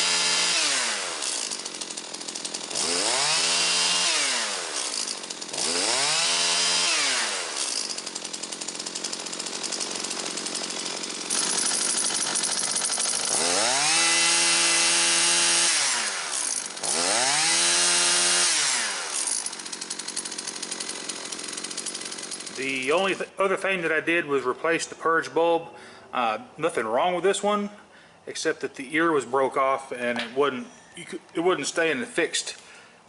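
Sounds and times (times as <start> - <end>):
two-stroke engine revving: 0.0 - 23.2.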